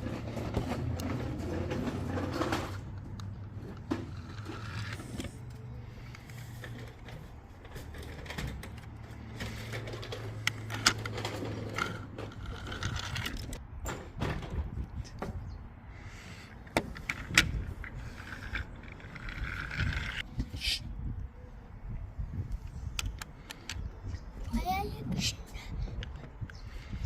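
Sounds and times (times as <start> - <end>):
toy cars clicking and knocking: 0.0 - 13.6, 16.6 - 20.3.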